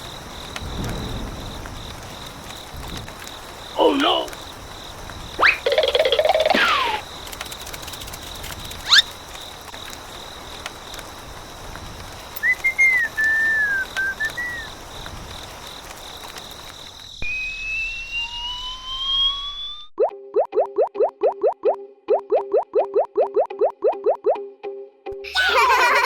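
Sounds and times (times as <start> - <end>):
upward whistle sweep: 5.4 - 5.7, 12.4 - 14.7, 17.2 - 20.1
wavering whistled figure: 5.4 - 7.0, 12.4 - 14.7, 17.2 - 20.1
slide whistle rising: 17.2 - 20.0.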